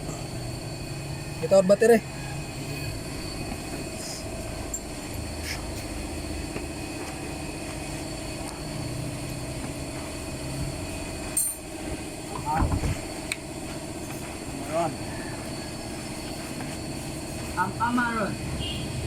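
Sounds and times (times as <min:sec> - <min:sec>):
low mechanical hum: 0:00.0 - 0:19.0.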